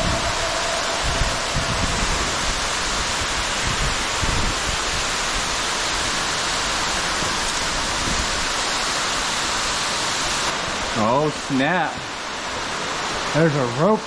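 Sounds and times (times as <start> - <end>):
spray falling heavily: 0.0 - 14.0
waterfall rushing: 0.0 - 14.0.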